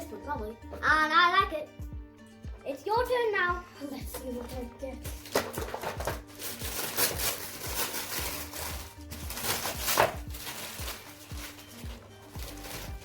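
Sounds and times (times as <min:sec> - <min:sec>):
background music with steady beat: 0:00.0 - 0:13.0
wrapping paper rustling and tearing: 0:05.2 - 0:13.0.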